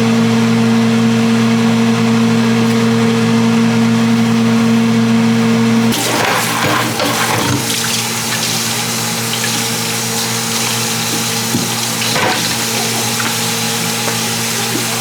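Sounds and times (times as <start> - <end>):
kitchen appliance motor hum: 5.6 - 15.0
rushing noise like running tap: 5.9 - 15.0.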